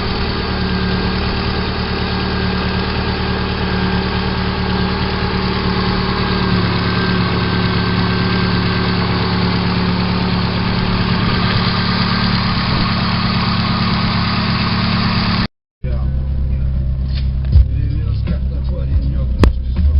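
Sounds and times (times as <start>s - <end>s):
engine knocking: 0.0s - 15.5s
car engine idling: 0.0s - 19.9s.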